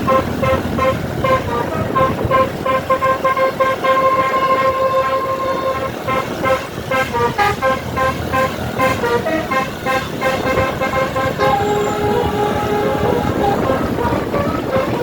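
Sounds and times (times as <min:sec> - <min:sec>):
bus horn playing a tune: 0:00.0 - 0:15.0
bus road noise: 0:00.0 - 0:15.0.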